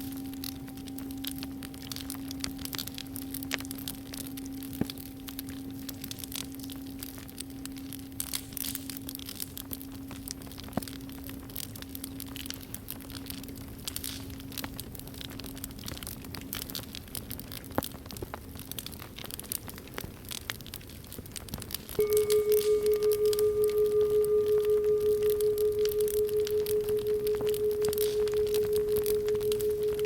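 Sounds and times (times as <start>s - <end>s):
singing bowl hum: 0.0s - 11.2s, 22.0s - 30.0s
wood fire crackling and popping: 0.0s - 30.0s.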